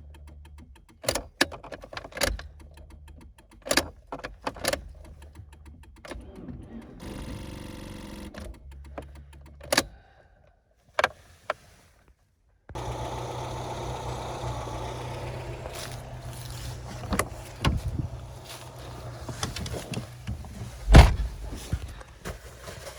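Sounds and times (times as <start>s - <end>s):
car engine running: 4.9s - 9.7s, 12.7s - 22.1s
running sound with low hum: 12.8s - 22.0s.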